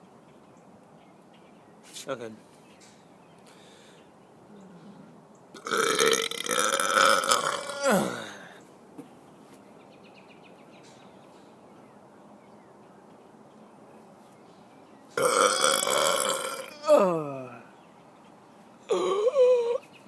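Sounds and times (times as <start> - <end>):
man burping: 5.6 - 8.6, 15.2 - 17.7, 18.9 - 19.8.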